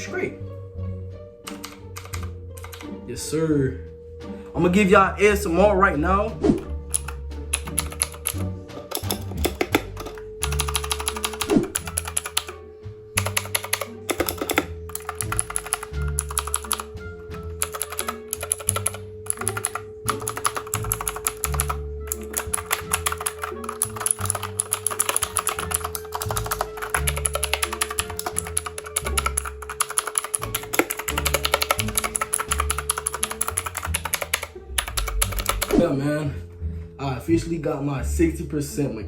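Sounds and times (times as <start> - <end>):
mechanical keyboard key clicks: 6.9 - 12.5, 13.2 - 16.8, 17.6 - 35.8.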